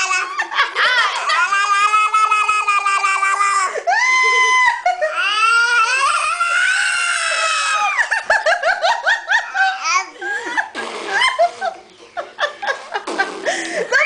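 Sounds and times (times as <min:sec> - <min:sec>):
baby squealing: 0:05.1 - 0:08.0.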